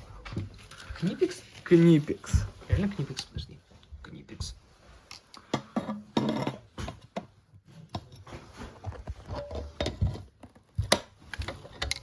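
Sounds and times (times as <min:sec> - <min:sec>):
hand tools knocking and scraping: 0:05.5 - 0:12.0.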